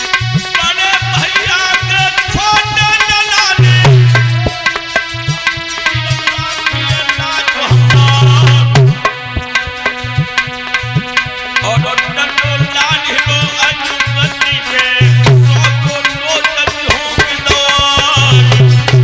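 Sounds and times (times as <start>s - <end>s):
tabla hand drum fast rhythm: 0.0s - 19.0s
heavy low drum strokes: 1.9s - 11.9s, 17.5s - 19.0s.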